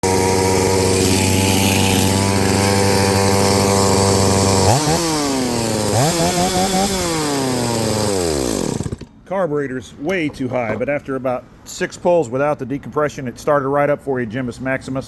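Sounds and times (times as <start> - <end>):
chainsaw running: 0.0 - 9.1.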